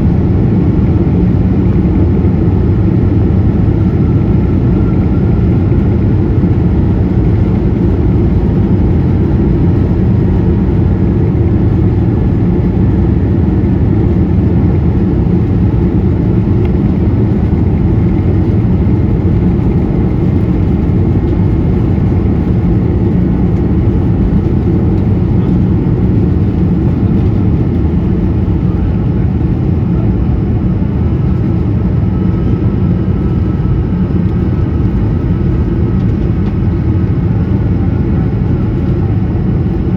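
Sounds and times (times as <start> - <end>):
airliner cabin engine rumble: 0.0 - 39.9.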